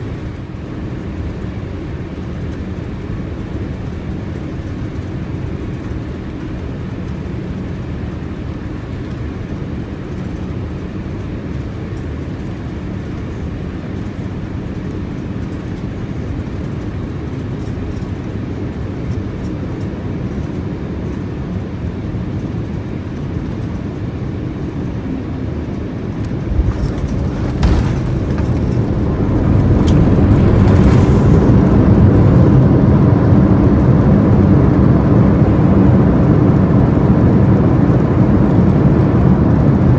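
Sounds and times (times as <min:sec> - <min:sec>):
airplane cabin noise: 0:00.0 - 0:39.9
wheels touching down: 0:26.2 - 0:32.8
engine reverse thrust rumble: 0:26.2 - 0:33.9.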